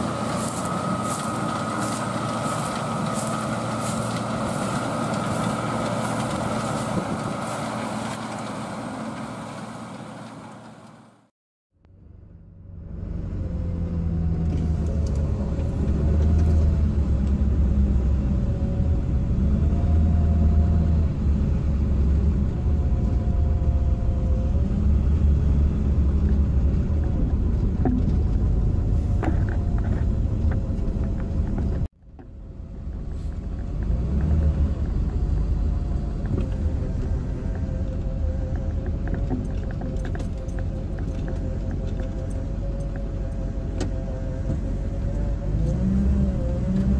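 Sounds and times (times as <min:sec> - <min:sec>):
farm machine engine rumbling: 0:00.0 - 0:11.2, 0:12.0 - 0:46.9.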